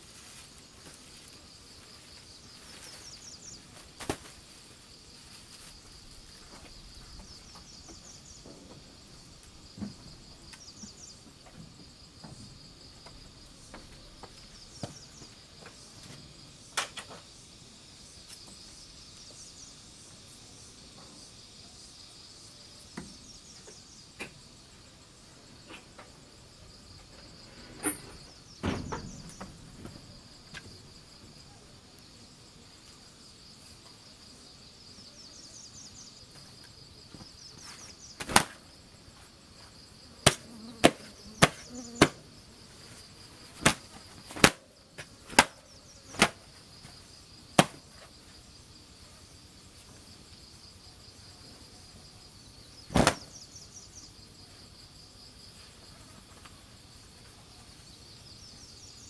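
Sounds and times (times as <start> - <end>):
chorus of field insects: 0.0 - 59.0.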